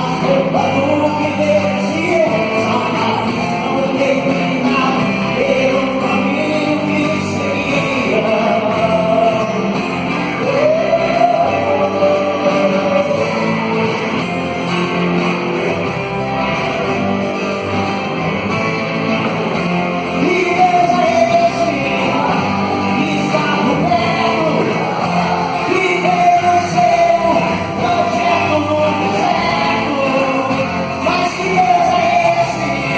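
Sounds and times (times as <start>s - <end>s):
gospel band music: 0.0s - 32.9s.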